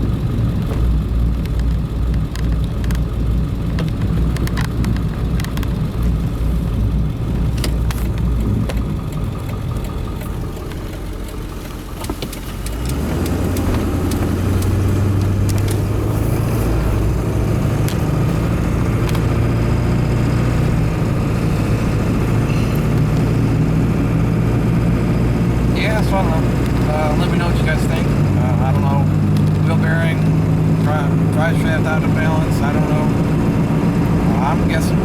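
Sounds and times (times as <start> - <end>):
diesel engine drone: 0.0 - 35.0
road noise: 0.0 - 35.0
clicks and rattles: 0.6 - 6.3, 7.4 - 16.2.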